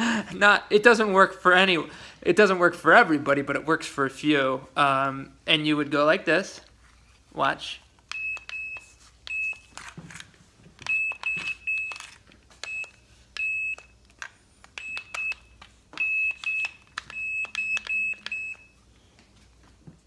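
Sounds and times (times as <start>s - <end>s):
stud sensor beeping: 8.1s - 9.7s, 10.8s - 14.0s, 14.7s - 18.8s.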